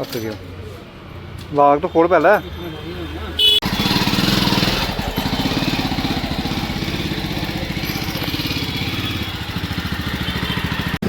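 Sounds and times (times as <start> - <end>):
motorcycle engine running: 3.4 - 11.0.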